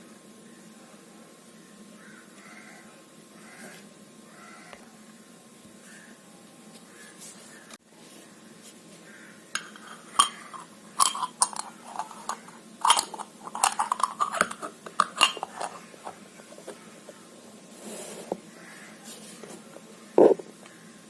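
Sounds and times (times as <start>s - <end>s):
small metal parts clinking: 9.6s - 15.8s.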